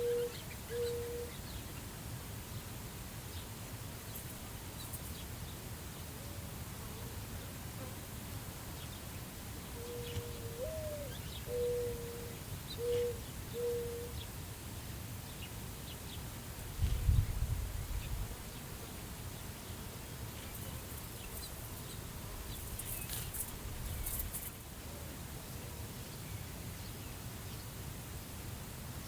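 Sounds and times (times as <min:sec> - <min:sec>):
dove cooing: 0:00.0 - 0:01.4, 0:09.8 - 0:14.2
wind over grass: 0:16.6 - 0:18.7.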